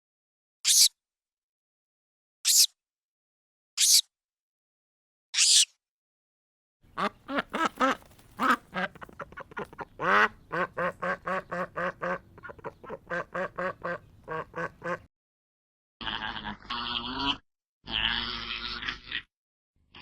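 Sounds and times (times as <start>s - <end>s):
duck quacking: 6.9s - 15.1s.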